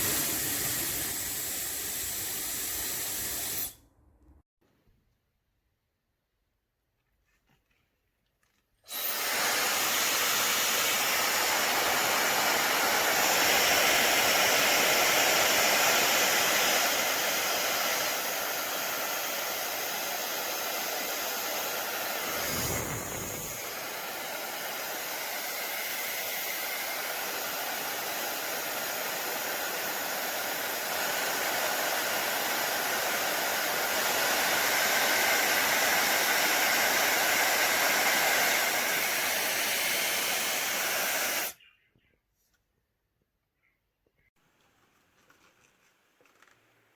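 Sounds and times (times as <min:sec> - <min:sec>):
hair dryer rushing air: 0:00.0 - 0:03.8, 0:08.9 - 0:41.6.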